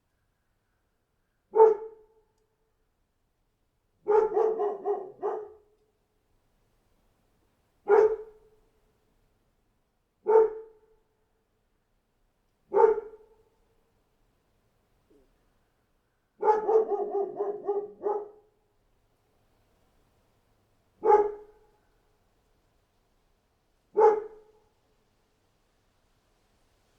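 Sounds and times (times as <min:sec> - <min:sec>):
dog barking: 0:01.5 - 0:02.2, 0:04.0 - 0:05.7, 0:07.8 - 0:08.5, 0:10.2 - 0:10.8, 0:12.7 - 0:13.4, 0:16.4 - 0:18.5, 0:21.0 - 0:21.7, 0:23.9 - 0:24.6.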